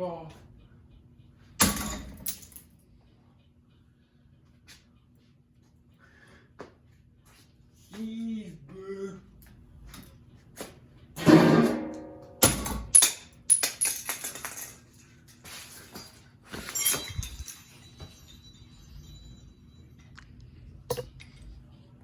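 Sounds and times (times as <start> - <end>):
fan being smashed: 1.6 - 2.3, 11.2 - 14.8
broken pieces clinking: 12.8 - 18.9.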